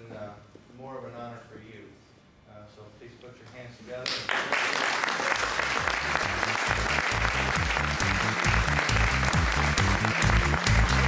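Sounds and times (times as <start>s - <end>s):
audience applauding: 4.2s - 11.0s
music with bass line and ticks: 7.2s - 11.0s.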